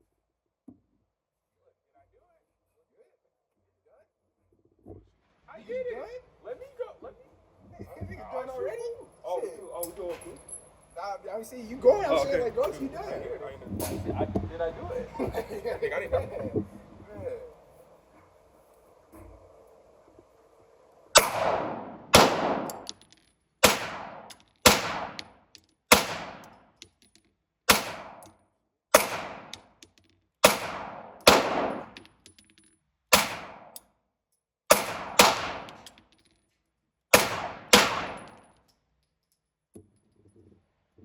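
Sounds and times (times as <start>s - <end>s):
gunshots with echo: 21.2s - 22.9s, 23.6s - 25.2s, 25.9s - 26.6s, 27.7s - 28.2s, 28.9s - 29.6s, 30.4s - 32.0s, 33.1s - 33.7s, 34.7s - 35.9s, 37.1s - 38.4s.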